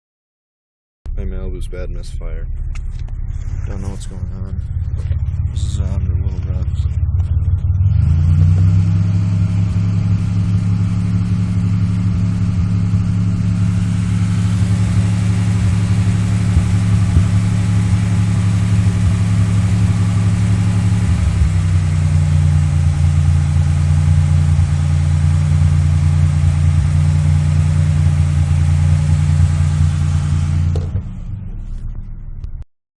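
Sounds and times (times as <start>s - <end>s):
car engine running with misfire: 1.2s - 32.6s.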